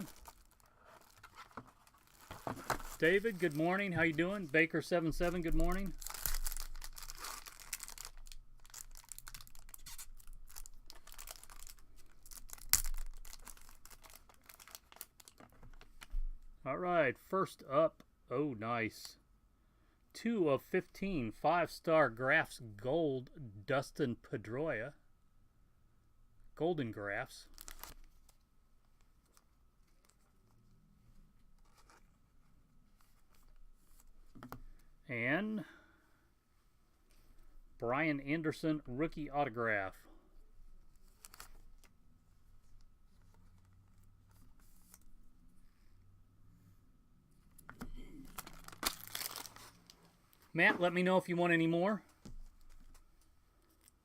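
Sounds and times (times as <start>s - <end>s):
packaging tearing and crinkling: 0.0s - 4.6s, 5.2s - 15.5s, 27.5s - 28.1s, 41.1s - 41.9s, 48.2s - 50.0s.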